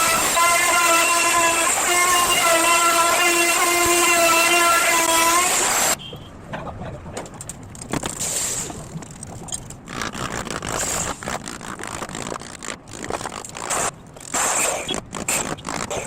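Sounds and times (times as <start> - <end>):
whining machine tone: 0.0 - 5.9.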